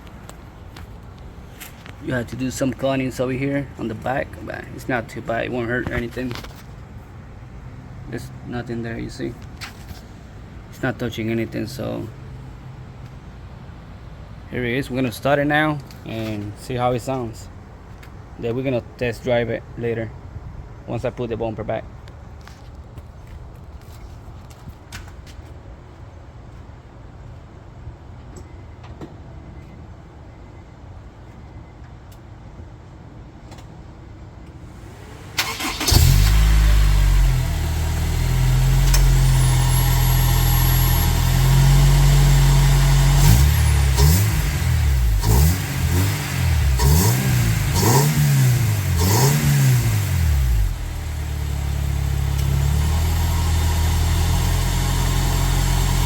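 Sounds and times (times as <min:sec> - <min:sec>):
car engine starting and revving: 0:34.8 - 0:56.0.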